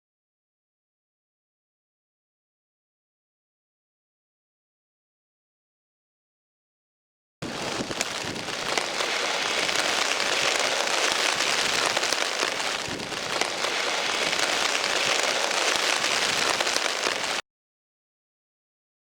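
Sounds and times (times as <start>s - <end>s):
patter of falling water: 7.4s - 17.4s.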